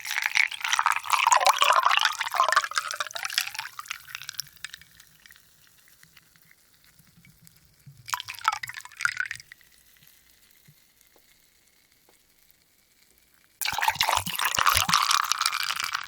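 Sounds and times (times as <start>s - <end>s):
water poured into glass of ice: 0.0s - 5.5s, 8.1s - 9.5s, 13.6s - 16.0s.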